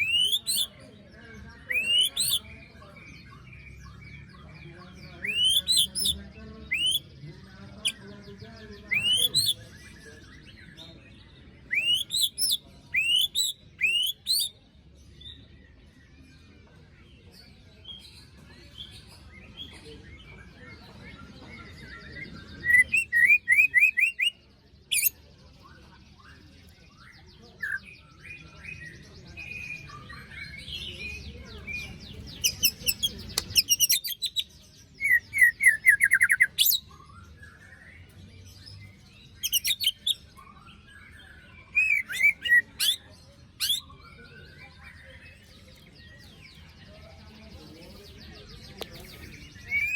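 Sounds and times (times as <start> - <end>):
bird harsh rasping calls: 0.0 - 0.7, 1.7 - 2.4, 5.2 - 7.1, 8.9 - 9.6, 32.3 - 34.4
bird whistled song: 0.0 - 0.8, 1.6 - 2.6, 5.1 - 7.2, 8.9 - 10.7, 11.6 - 14.6, 21.2 - 25.2, 26.2 - 46.6, 48.8 - 49.9.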